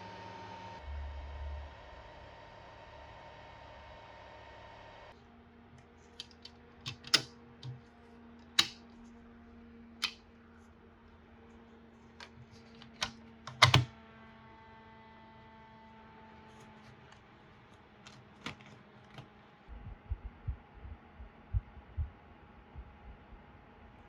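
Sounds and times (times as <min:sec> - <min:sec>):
faint steady hum: 0:00.0 - 0:24.0
clicks and taps of handling: 0:06.1 - 0:07.8, 0:08.6 - 0:08.8
soft low thumps: 0:19.7 - 0:23.6.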